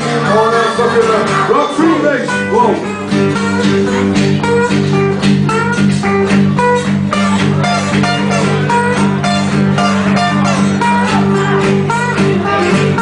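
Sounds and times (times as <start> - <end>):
bass notes: 0.0 - 13.0
plucked acoustic guitar runs: 0.0 - 13.0.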